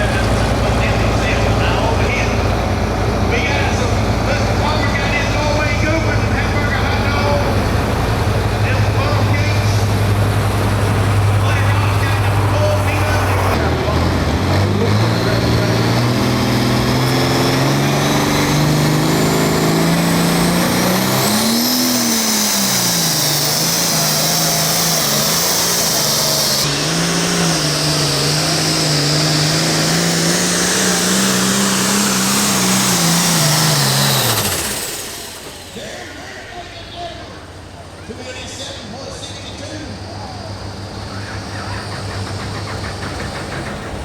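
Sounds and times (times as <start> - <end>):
diesel tractor engine roaring: 0.0 - 44.0
turbo whine: 5.7 - 37.6.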